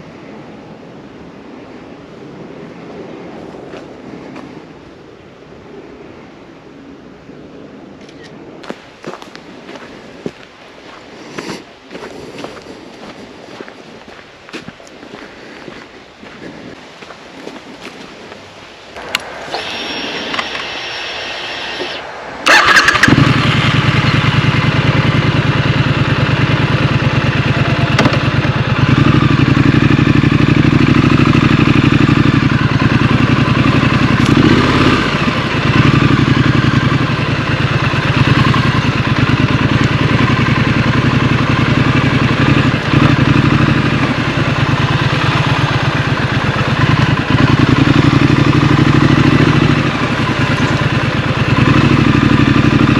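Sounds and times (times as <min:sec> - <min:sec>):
motorcycle engine starting and running: 0:19.0 - 0:52.9.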